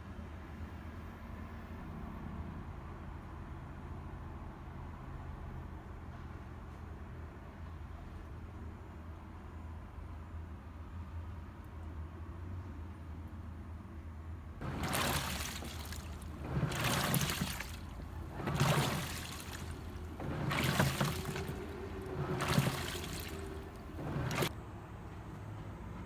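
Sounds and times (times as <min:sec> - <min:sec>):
water sloshing in washing machine: 0:14.6 - 0:24.5.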